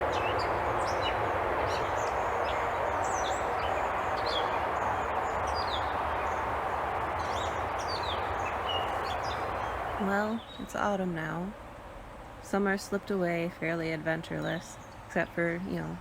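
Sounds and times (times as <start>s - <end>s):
small birds chirping: 0.0s - 11.0s
rushing background noise: 0.0s - 16.0s.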